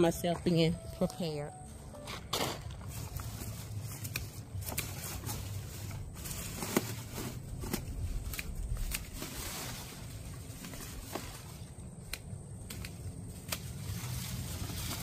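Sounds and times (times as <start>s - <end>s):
leaves rustling and crackling: 2.6s - 15.0s
sharp clicks and snips: 12.0s - 13.6s.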